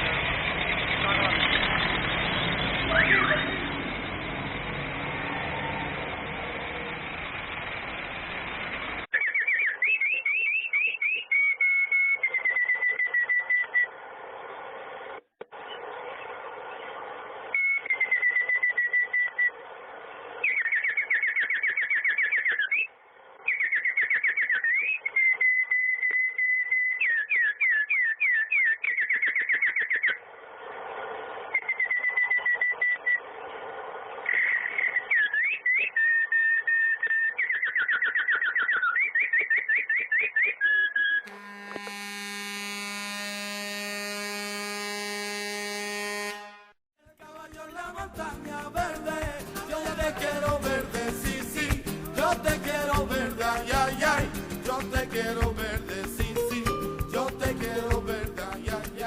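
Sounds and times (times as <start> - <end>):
songbird singing: 9.1 - 13.9, 20.4 - 30.2, 34.3 - 42.6.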